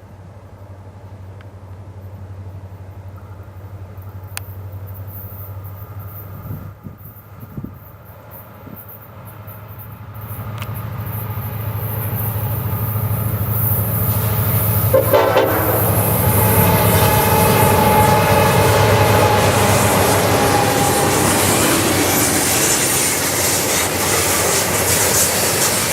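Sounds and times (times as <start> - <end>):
diesel locomotive engine rumble: 0.0 - 25.9
locomotive air horn: 14.1 - 22.6.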